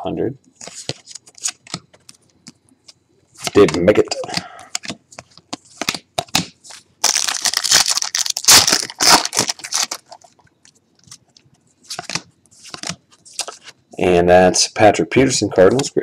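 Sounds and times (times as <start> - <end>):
cards clicking and rustling: 0.6 - 13.8
wrapper tearing and crinkling: 7.0 - 10.4.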